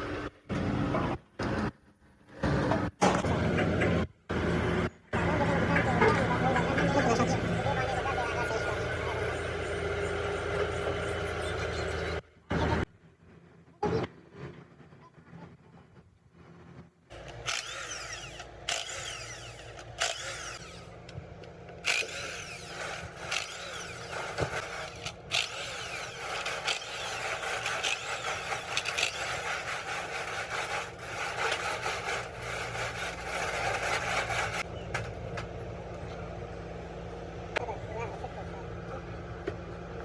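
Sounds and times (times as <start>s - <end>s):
power tool running: 3.8s - 12.8s, 17.1s - 36.5s.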